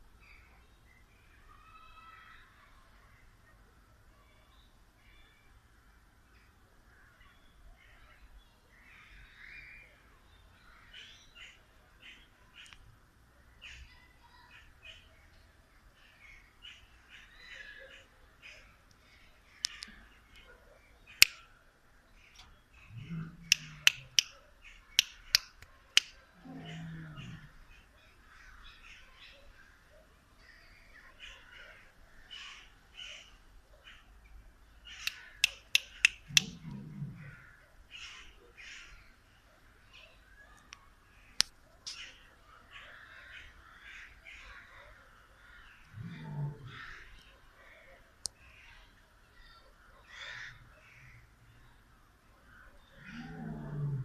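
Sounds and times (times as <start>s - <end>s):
bird calls: 16.1s - 21.5s, 22.1s - 51.8s
sharp snapping clicks: 21.2s - 21.4s, 23.4s - 24.3s, 24.9s - 26.2s, 35.0s - 36.8s
lion grunting: 22.9s - 24.1s, 26.4s - 27.6s, 36.3s - 37.4s, 45.9s - 47.0s, 53.0s - 54.0s
sharp click: 35.0s - 36.5s.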